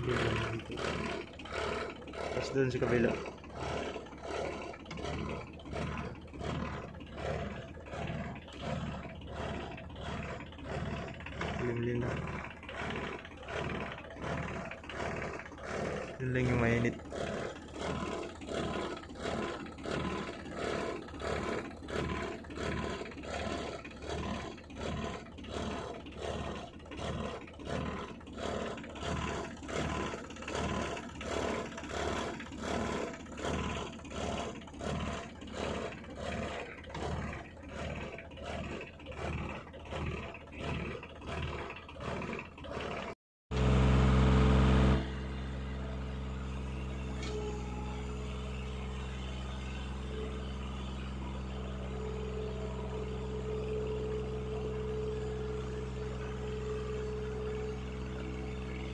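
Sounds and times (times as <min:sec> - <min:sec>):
backhoe engine pulsing: 0:00.0 - 0:58.9.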